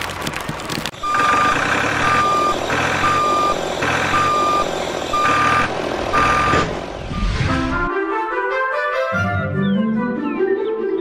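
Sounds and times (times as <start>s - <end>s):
reversing alarm beeping: 1.0s - 7.6s.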